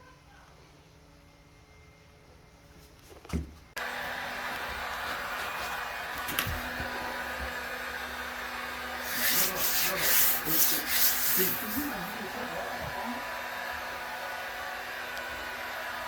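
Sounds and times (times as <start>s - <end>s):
sanding strokes on drywall: 8.9s - 12.6s.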